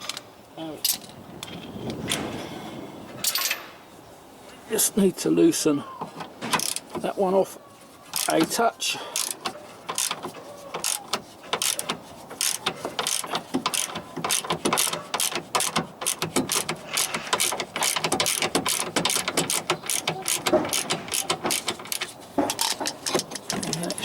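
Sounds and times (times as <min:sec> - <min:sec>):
ratchet wrench clicking: 0:06.6 - 0:06.8, 0:09.2 - 0:10.2, 0:10.8 - 0:11.0, 0:11.6 - 0:23.9.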